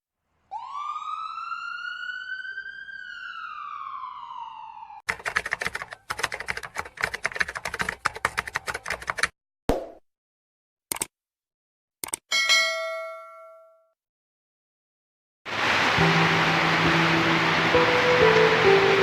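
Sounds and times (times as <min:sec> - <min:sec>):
siren wail: 0:00.5 - 0:05.1
rapid sharp clicking: 0:05.1 - 0:09.3, 0:10.9 - 0:11.1.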